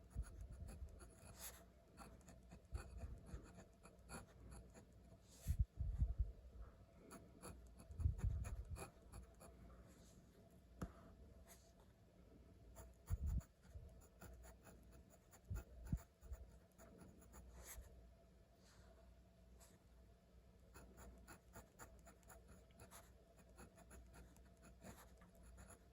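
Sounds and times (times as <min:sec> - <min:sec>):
pen writing on paper: 0:00.1 - 0:04.8, 0:07.4 - 0:09.4, 0:20.8 - 0:25.8.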